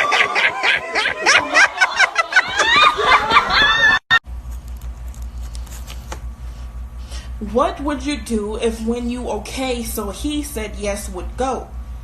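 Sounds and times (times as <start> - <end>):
people laughing and talking: 0.0 - 4.0
low steady hum: 4.3 - 12.0.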